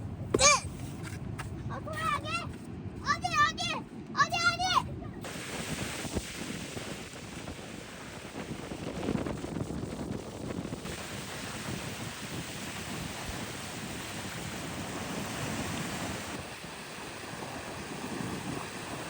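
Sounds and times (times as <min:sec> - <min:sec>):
wind buffeting microphone: 0:00.0 - 0:19.0
waves washing on shore: 0:05.2 - 0:19.0.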